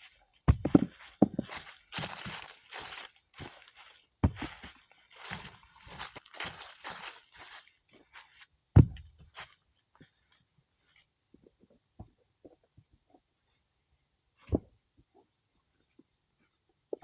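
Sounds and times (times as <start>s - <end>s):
dirt and rocks scraping: 0.0s - 8.4s
heavy thud: 8.8s - 9.1s.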